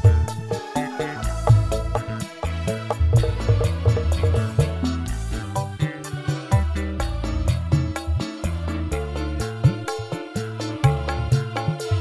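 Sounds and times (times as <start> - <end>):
loud dance music: 0.0 - 7.3
deep bass line: 0.0 - 10.0.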